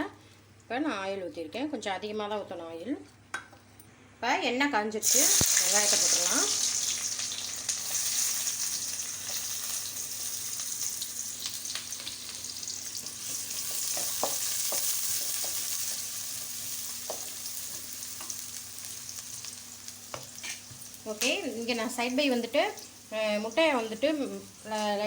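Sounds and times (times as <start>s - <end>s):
onions sizzling in oil: 5.0s - 25.0s
spoon tapping and scraping pan: 13.2s - 16.1s.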